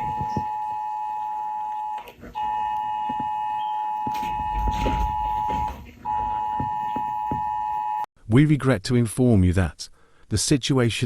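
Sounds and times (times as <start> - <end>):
two-tone electronic beep: 0.0 - 8.0.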